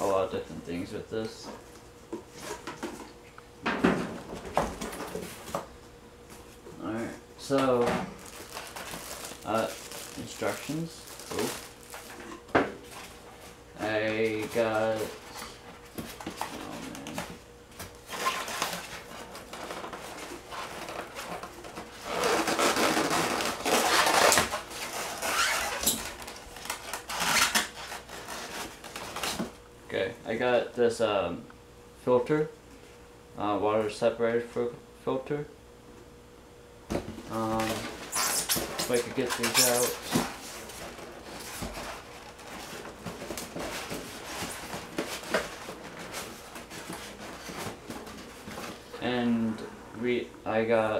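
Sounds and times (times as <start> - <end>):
packaging rustling: 8.1 - 12.3, 18.0 - 29.5, 37.2 - 49.0.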